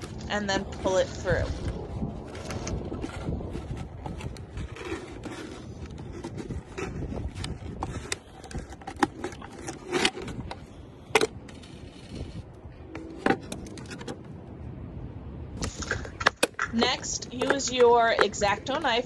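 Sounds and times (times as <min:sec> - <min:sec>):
plastic bottle handling noise: 0:00.0 - 0:12.3.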